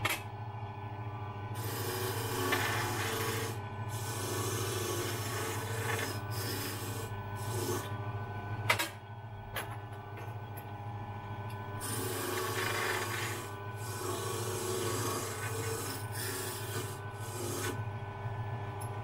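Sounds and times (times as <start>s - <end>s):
cutter grinding key blank: 11.6s - 17.9s.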